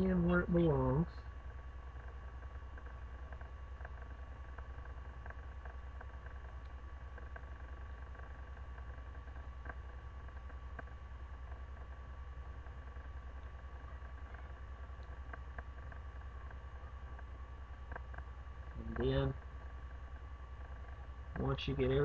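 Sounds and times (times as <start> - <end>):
steady low hum: 0.0 - 22.0
small clicks and taps: 2.0 - 12.0, 12.6 - 18.3.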